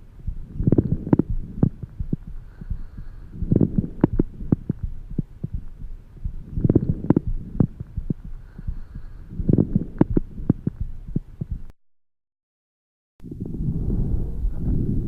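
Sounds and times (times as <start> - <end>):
breathing through stethoscope: 2.3 - 4.8, 8.3 - 10.2.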